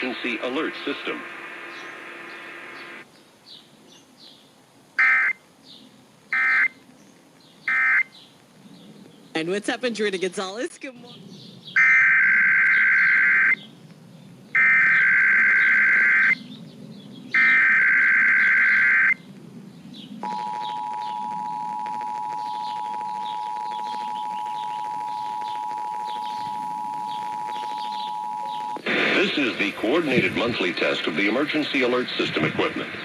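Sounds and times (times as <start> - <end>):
digital data tone bursts: 14.6 - 16.4, 17.4 - 19.2, 20.2 - 28.8
two-tone attention signal: 20.2 - 28.8.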